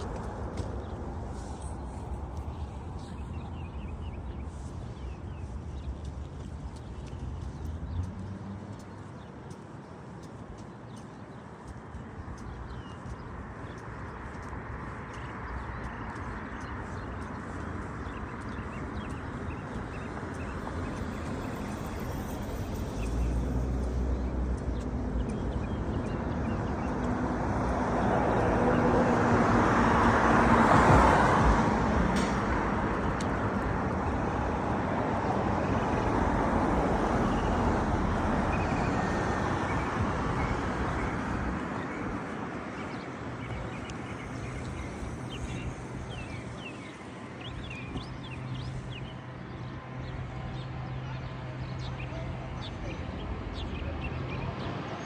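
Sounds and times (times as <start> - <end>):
vehicle passing by: 7.1 - 9.0, 16.2 - 55.0.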